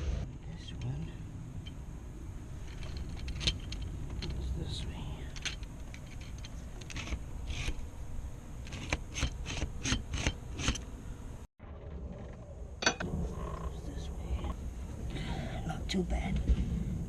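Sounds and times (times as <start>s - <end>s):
hands rubbing and scraping parts: 2.6s - 7.8s.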